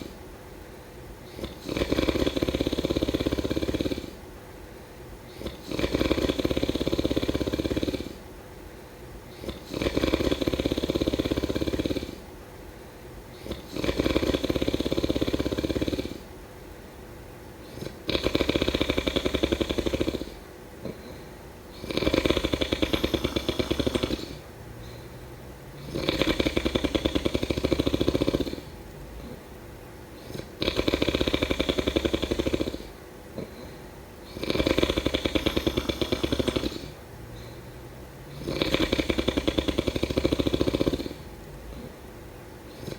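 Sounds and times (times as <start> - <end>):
person snoring: 1.3 - 4.2, 5.3 - 8.2, 9.3 - 12.3, 13.4 - 16.3, 17.6 - 25.2, 25.8 - 29.4, 30.2 - 37.6, 38.3 - 42.0, 42.7 - 42.9.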